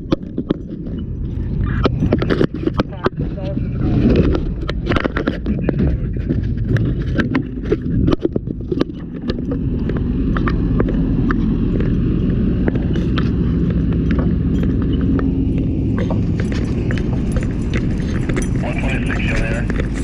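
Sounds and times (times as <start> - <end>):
low engine rumble: 0.0 - 20.0
sharp clicks and rattles: 0.0 - 20.0.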